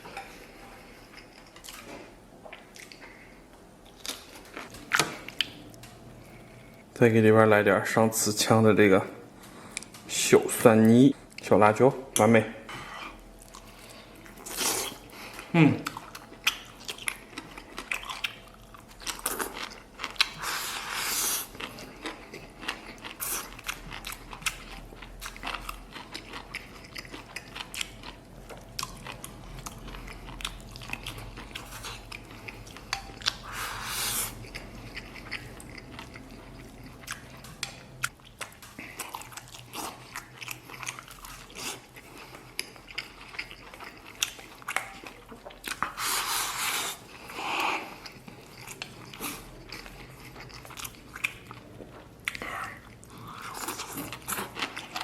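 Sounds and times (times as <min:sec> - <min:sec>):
chewing and biting food: 0:13.4 - 0:55.0.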